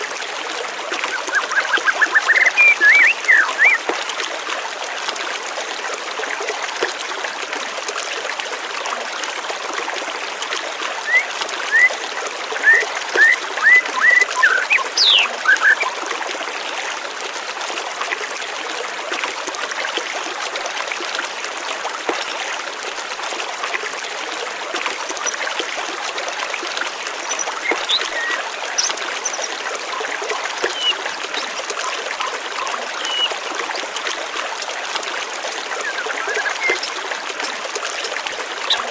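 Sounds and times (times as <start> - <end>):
stream water flowing: 0.0 - 38.9
birds chirping: 1.1 - 3.8, 12.6 - 16.0, 27.2 - 33.4, 35.8 - 37.0.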